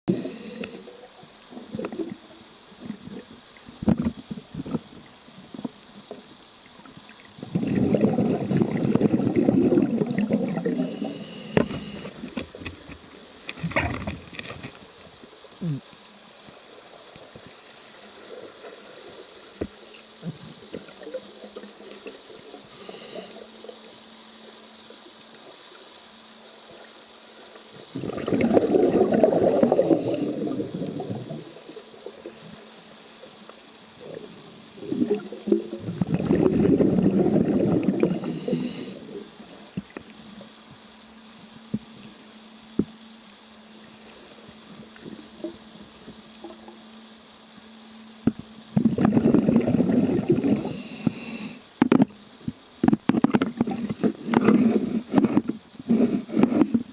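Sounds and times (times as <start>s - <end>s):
faint steady hum: 0.0s - 56.9s
small clicks: 0.2s - 7.4s
diver's regulator bubbling underwater: 7.3s - 12.9s, 27.9s - 32.4s, 34.0s - 39.3s, 48.8s - 50.8s.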